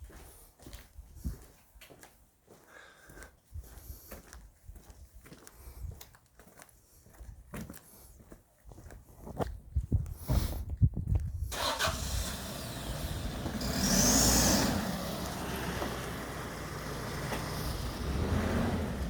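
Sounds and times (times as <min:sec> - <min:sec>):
vehicle engine rumbling: 0:11.5 - 0:19.0.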